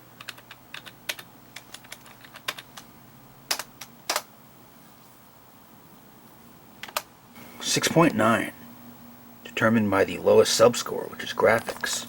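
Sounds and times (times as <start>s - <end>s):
computer keyboard clicks: 0.2s - 2.9s, 3.5s - 4.3s, 6.8s - 7.1s.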